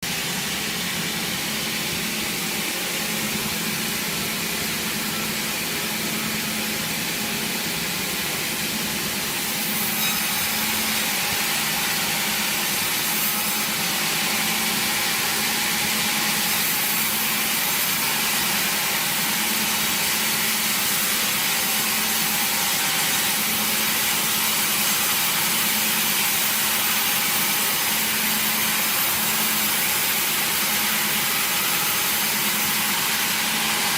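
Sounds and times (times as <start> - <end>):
saw cutting through wood: 0.0 - 33.9.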